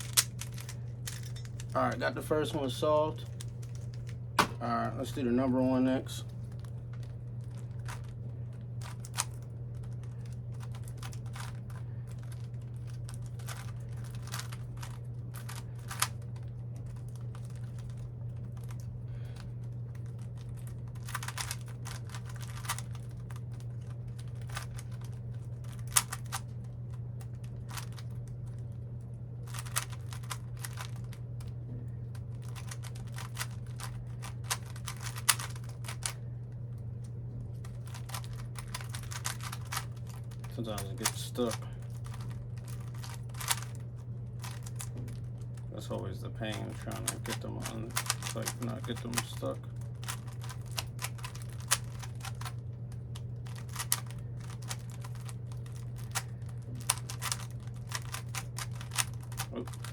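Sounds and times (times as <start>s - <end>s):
puzzle cube clicking: 0.0s - 0.7s, 13.3s - 16.2s, 21.0s - 23.3s, 24.2s - 26.5s, 29.5s - 31.2s, 32.4s - 36.1s, 37.9s - 40.2s, 41.0s - 43.8s, 46.7s - 49.4s, 50.0s - 52.5s, 53.5s - 59.9s
steady low hum: 0.0s - 59.9s.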